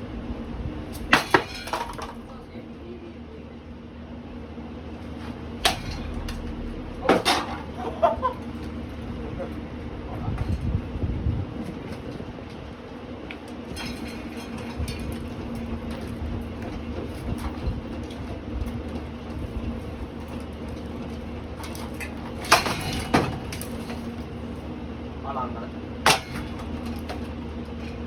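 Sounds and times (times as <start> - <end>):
fan blades ticking: 0.0 - 2.6, 5.6 - 8.1
ceiling fan motor hum: 0.0 - 12.6
loud knocks: 5.6 - 7.9.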